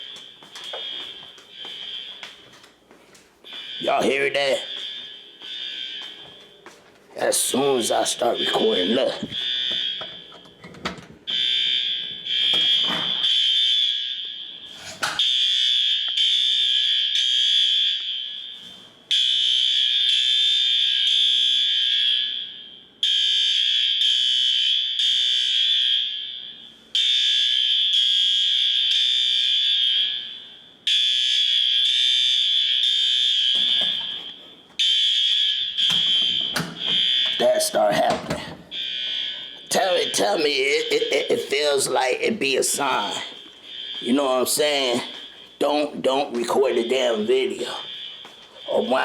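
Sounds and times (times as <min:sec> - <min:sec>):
fire alarm shrill tone: 0:00.0 - 0:02.6, 0:03.5 - 0:49.0.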